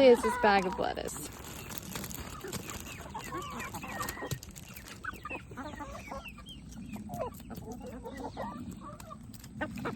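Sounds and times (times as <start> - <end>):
hens clucking: 0.0 - 9.9
pecking and scratching clicks: 1.2 - 5.4, 6.4 - 9.9.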